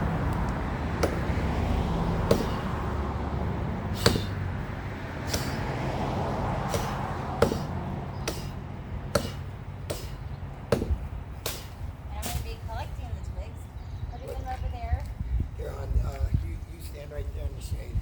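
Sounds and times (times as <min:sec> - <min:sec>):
axe chopping wood: 0:01.0 - 0:01.5, 0:02.2 - 0:02.8, 0:03.9 - 0:04.5, 0:05.2 - 0:05.7, 0:06.6 - 0:12.4.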